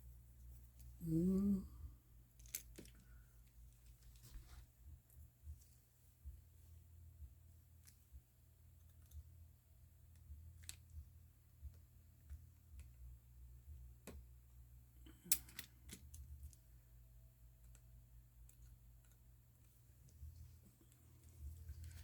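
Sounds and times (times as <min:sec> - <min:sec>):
small clicks of repair tools: 0:15.1 - 0:16.6.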